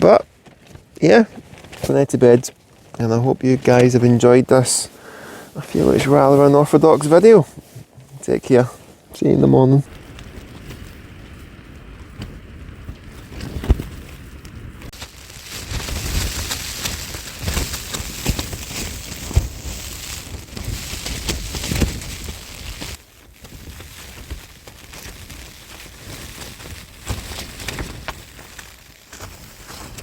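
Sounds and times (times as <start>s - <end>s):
gusting wind: 0.1s - 30.0s
rain: 9.9s - 30.0s.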